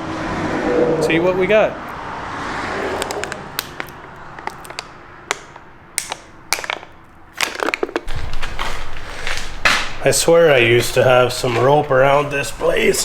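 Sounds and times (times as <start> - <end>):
low rumble: 0.0 - 4.9
objects knocking and clattering: 2.9 - 10.0.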